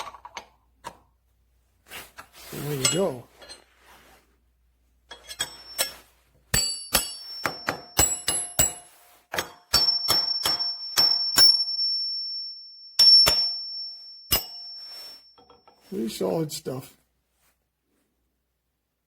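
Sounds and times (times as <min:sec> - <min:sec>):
metal wrenches clinking: 0:02.6 - 0:03.8, 0:05.1 - 0:11.8.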